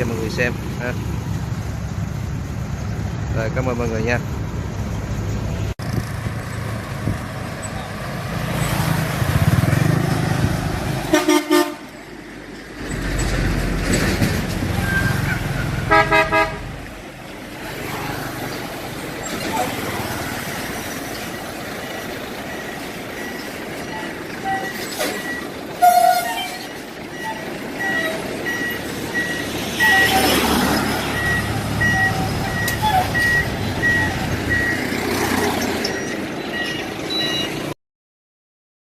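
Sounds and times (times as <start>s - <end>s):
road noise: 0.0s - 37.8s
horn toot: 11.1s - 11.9s, 14.8s - 16.8s, 25.8s - 28.2s
reversing alarm beeping: 20.2s - 34.9s, 35.8s - 37.7s.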